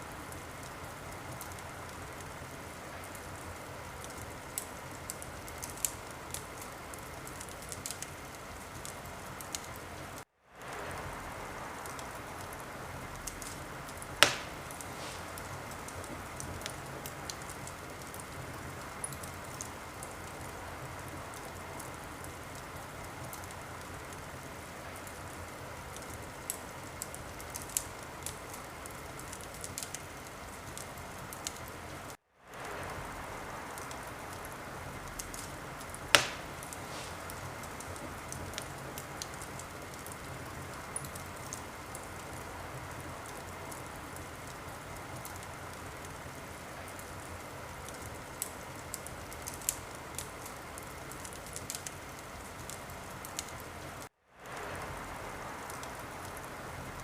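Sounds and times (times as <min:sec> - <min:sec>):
wood fire crackling: 0:00.0 - 0:57.0
loud sharp pop: 0:14.2 - 0:15.4, 0:36.1 - 0:37.3.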